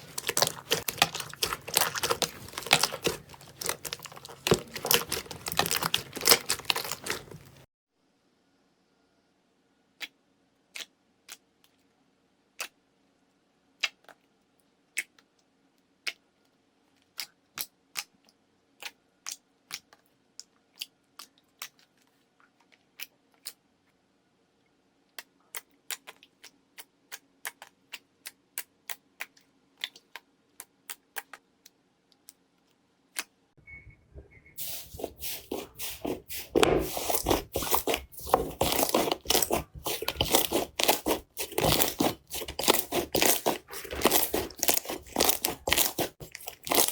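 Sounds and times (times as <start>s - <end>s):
slime clicking and popping: 0.0s - 7.5s, 36.5s - 46.9s
crackly crunching: 0.0s - 7.7s, 34.6s - 46.9s.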